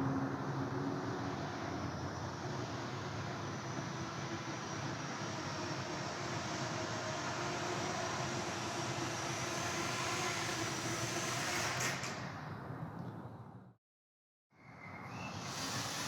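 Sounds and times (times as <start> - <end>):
quadcopter propellers whirring: 0.0 - 12.5, 15.0 - 16.0.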